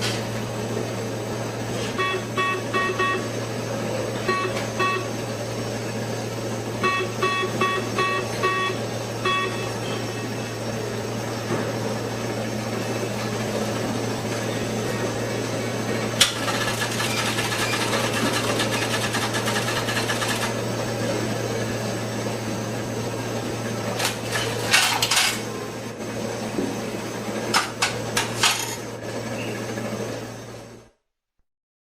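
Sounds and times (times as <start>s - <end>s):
steady low hum: 0.0s - 16.9s
mechanical whirring rattle: 16.1s - 20.7s
machine clicks and clacks: 16.2s - 20.6s.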